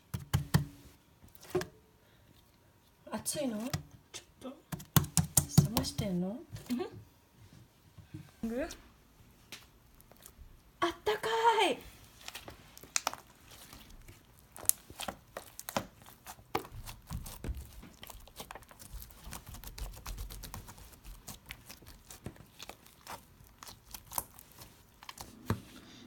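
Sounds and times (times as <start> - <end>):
slime sticky clicks and pops: 12.8 - 13.3.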